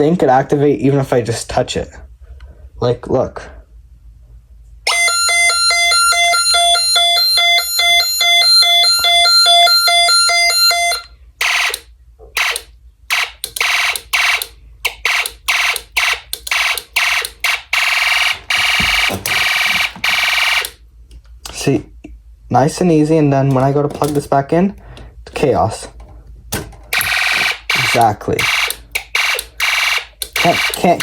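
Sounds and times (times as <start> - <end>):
fire alarm sounding: 4.9 - 20.8, 27.0 - 31.0.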